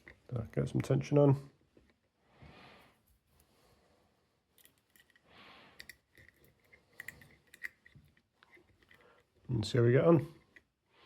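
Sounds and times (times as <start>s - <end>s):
soft breath: 2.2s - 4.4s, 5.2s - 6.0s
lock picking metallic clicks: 5.8s - 9.0s.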